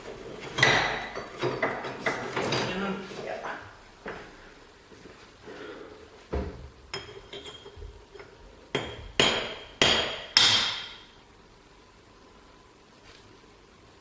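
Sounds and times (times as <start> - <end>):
hammer striking metal: 8.8 - 11.1.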